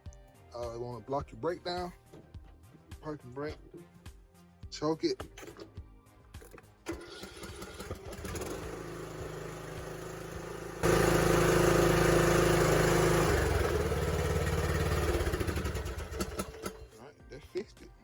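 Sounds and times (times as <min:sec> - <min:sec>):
mower starter cranking: 0:06.5 - 0:17.0
mower engine running: 0:06.9 - 0:17.0.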